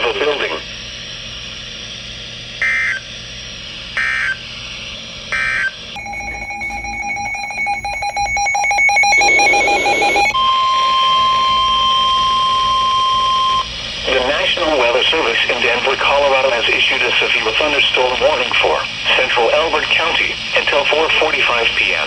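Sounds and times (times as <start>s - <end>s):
steady alarm tone: 5.3s - 13.7s
pulsing electronic alert beep: 6.0s - 10.4s.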